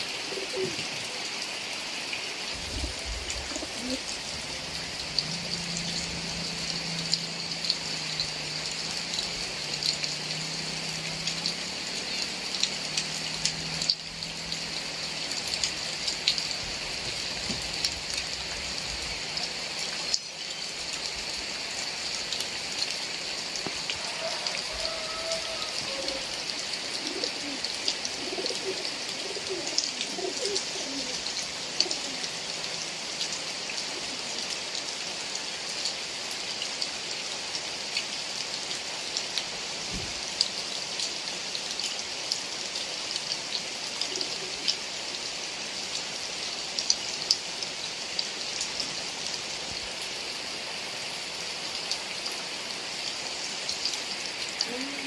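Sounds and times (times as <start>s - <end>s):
heavy rain pattering: 0.0s - 55.0s
faint high calls: 23.8s - 31.3s.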